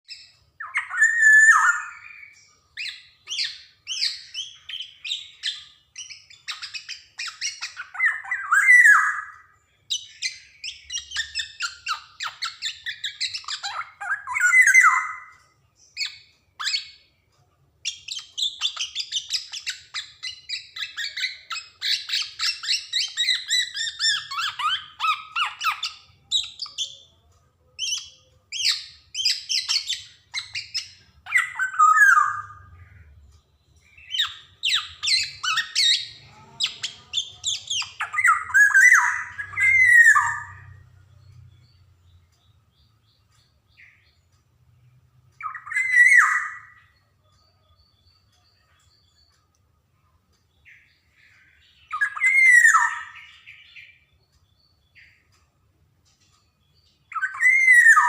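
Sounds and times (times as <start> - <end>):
bird chattering: 17.8 - 27.1, 33.9 - 40.8.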